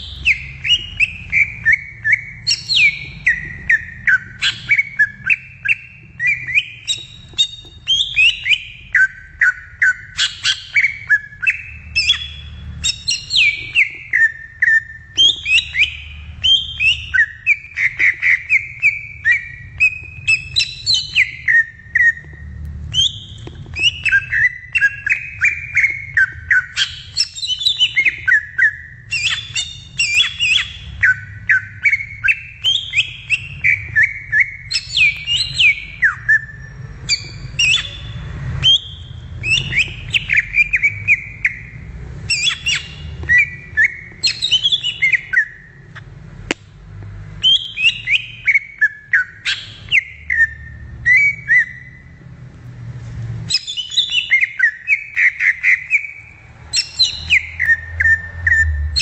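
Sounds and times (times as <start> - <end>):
bird singing whistled notes: 0.0 - 46.0, 47.4 - 52.2, 53.5 - 59.0
low steady rumble: 56.1 - 59.0.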